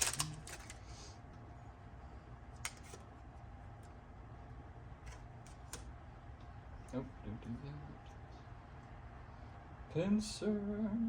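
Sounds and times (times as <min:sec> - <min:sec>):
cards being handled: 0:00.0 - 0:00.9, 0:02.5 - 0:03.2, 0:05.0 - 0:05.9
low steady hum: 0:00.0 - 0:11.0.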